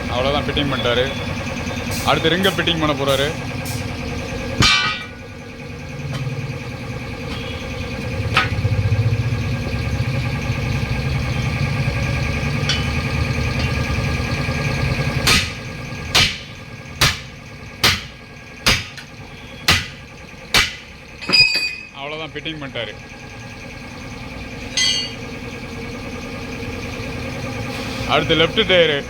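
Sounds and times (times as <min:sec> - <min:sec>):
steady engine-like hum: 0:00.0 - 0:29.0
metal impacts on wheel rim: 0:04.6 - 0:05.2
sharp ringing metal strikes: 0:04.6 - 0:05.3, 0:19.7 - 0:22.0, 0:24.7 - 0:25.3.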